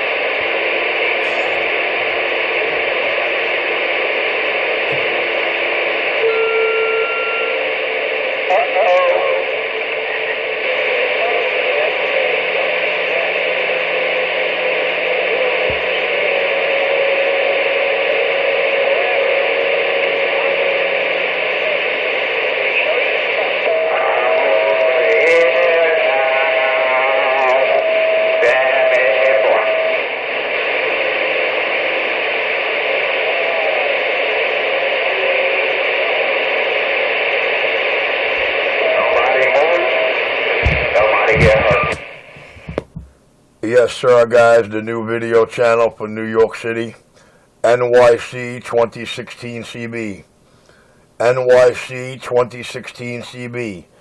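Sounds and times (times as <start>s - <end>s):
wavering radio whistles: 0.0s - 43.1s
radio static hiss: 0.0s - 54.0s
steady radio tone: 0.0s - 54.0s.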